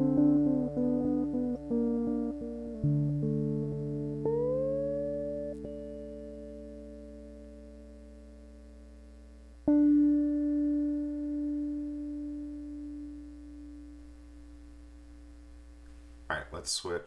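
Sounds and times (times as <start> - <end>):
cigar box guitar notes plucked: 0.0 - 15.8
steady electrical hum: 0.0 - 17.0.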